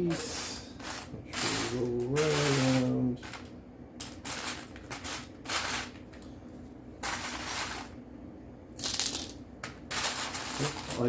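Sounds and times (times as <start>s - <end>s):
plastic bricks clattering: 0.8s - 6.2s, 8.8s - 11.0s.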